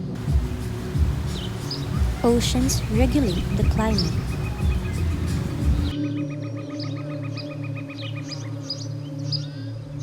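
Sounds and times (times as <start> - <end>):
background music with low beat: 0.0 - 6.0.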